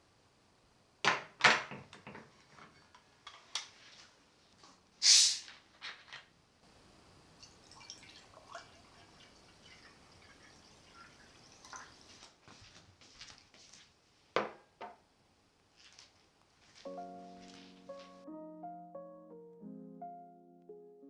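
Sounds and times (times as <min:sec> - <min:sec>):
short hiss: 0:05.0 - 0:05.6
faint steady hiss with ticks: 0:05.5 - 0:14.4.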